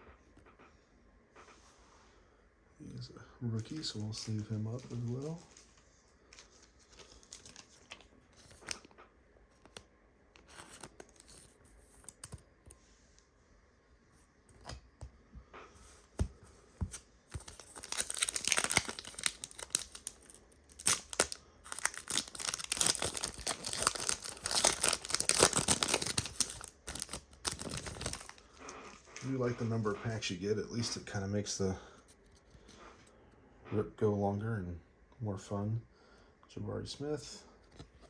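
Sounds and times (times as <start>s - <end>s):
foil wrapper tearing and crinkling: 17.3s - 29.0s.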